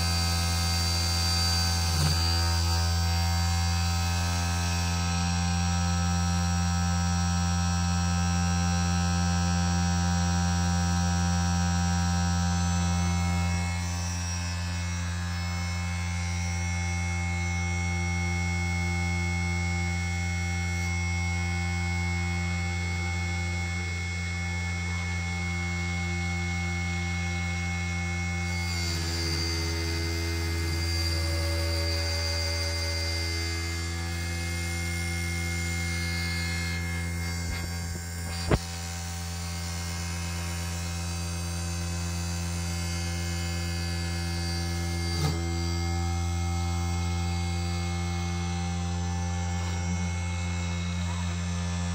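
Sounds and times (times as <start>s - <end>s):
machine motor humming and whining: 0.0s - 51.9s.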